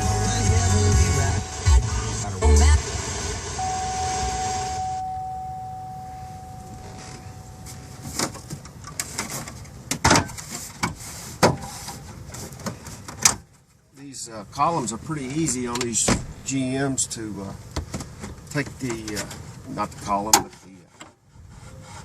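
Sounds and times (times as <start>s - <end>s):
steady faint tone: 3.4s - 9.8s.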